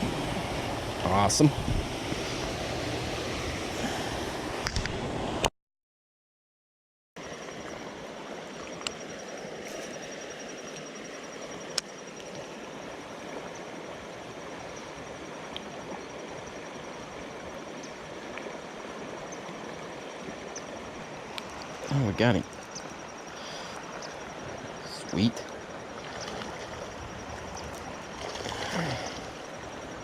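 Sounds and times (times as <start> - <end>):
creek water rushing: 0.0 - 5.4, 7.2 - 30.0.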